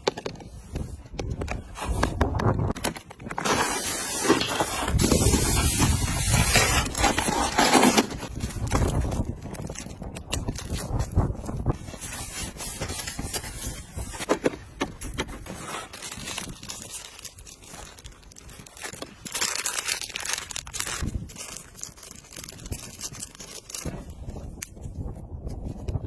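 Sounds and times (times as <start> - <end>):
rc car tyres scraping: 0.0 - 17.8.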